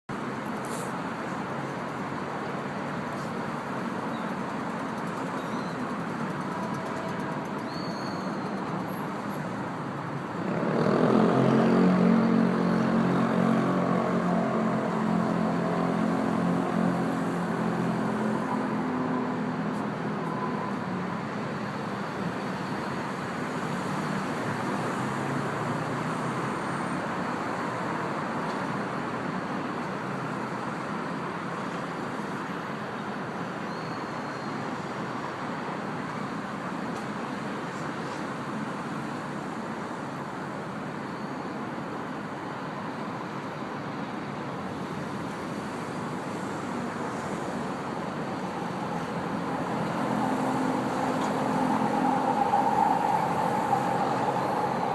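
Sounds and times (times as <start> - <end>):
urban background noise: 0.0 - 54.9
train passing: 45.4 - 54.9.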